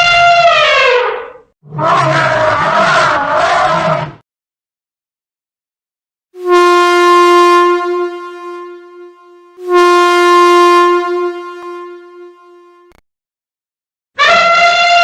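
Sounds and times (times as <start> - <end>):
train air horn blasts: 6.4 - 13.0, 14.2 - 15.0.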